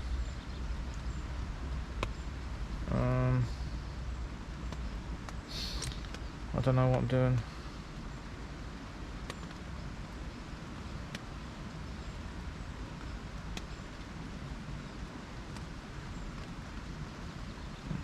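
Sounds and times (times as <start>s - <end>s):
low wind rumble: 0.0s - 18.0s
rain hissing on a tent: 0.0s - 18.0s
drops ticking on tent fabric: 1.9s - 2.4s, 4.6s - 7.2s, 9.2s - 9.8s, 11.0s - 11.4s, 12.9s - 14.2s, 15.0s - 16.8s.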